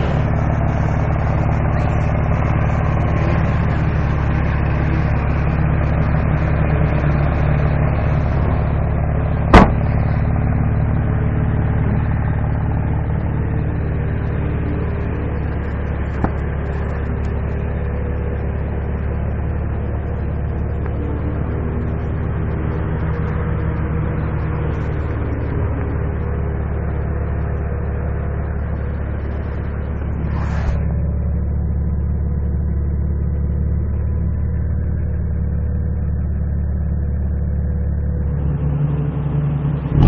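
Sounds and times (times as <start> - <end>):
car engine running: 0.0 - 40.0
sharp loud click: 9.5 - 10.0.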